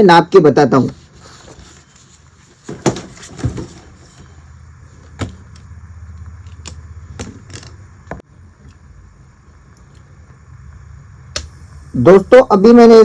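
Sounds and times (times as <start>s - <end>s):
low steady hum: 0.0s - 13.0s
switch click: 11.3s - 11.6s.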